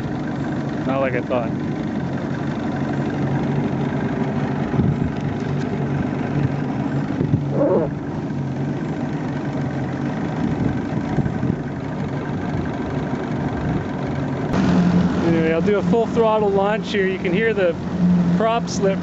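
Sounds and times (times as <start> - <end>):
outboard motor running: 0.0 - 19.0
wavering higher sound: 14.6 - 19.0.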